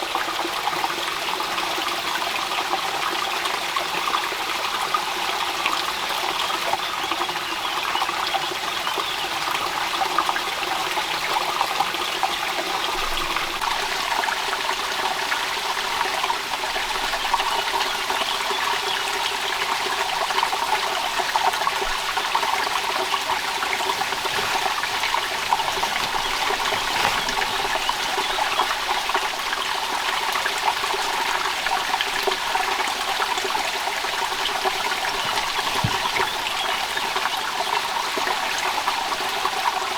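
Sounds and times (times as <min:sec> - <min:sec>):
rain falling: 0:21.8 - 0:37.6.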